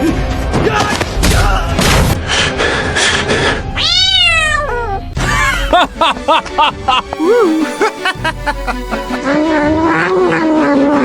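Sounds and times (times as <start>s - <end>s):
cat meowing: 3.8s - 5.1s
busy noise: 5.3s - 9.2s.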